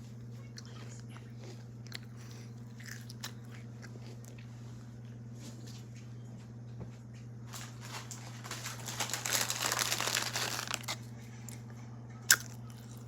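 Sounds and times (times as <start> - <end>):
steady low hum: 0.0 - 13.0
crinkling rustle: 7.5 - 11.0.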